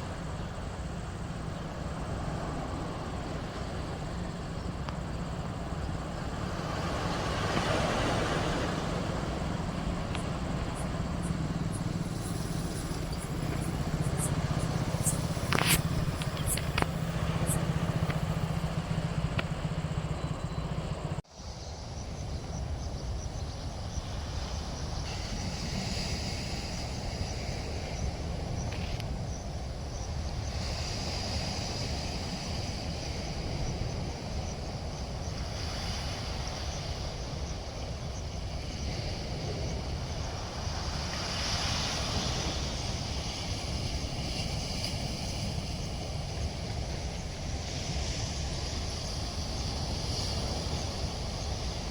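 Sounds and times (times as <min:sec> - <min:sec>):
floodwater rushing roar: 0:00.0 - 0:21.2.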